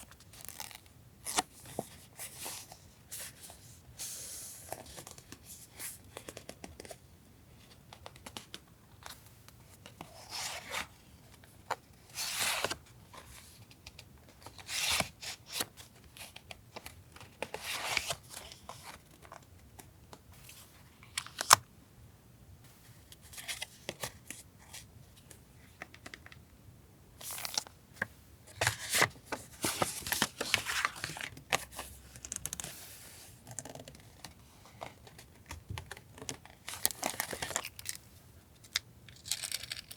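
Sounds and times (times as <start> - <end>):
paper rustling and crinkling: 12.1 - 19.4, 27.2 - 38.0.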